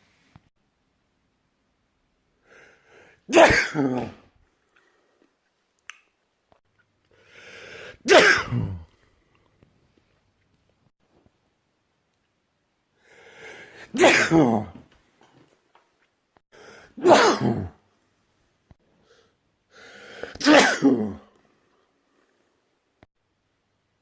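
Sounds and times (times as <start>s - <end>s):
person sneezing: 3.0s - 4.3s, 7.4s - 8.9s, 13.4s - 14.8s, 16.7s - 17.8s, 20.0s - 21.3s.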